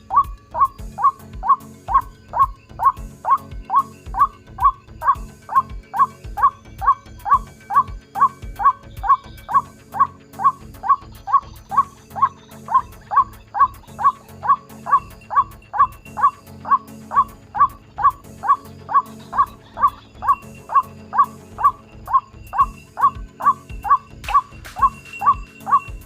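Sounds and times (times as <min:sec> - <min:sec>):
waterhen calling: 0:00.0 - 0:26.0.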